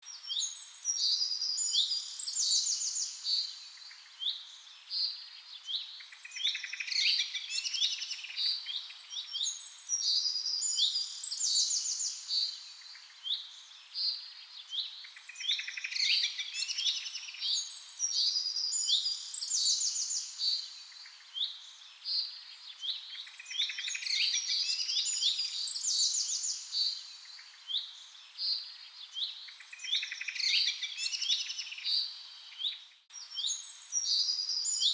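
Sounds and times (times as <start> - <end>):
songbird singing: 0.0 - 34.9.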